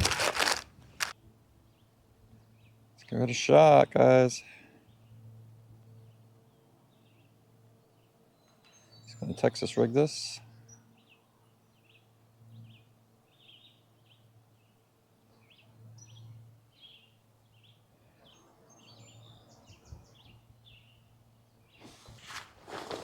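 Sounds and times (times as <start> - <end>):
soft rustling: 0.0 - 1.1, 21.8 - 23.0.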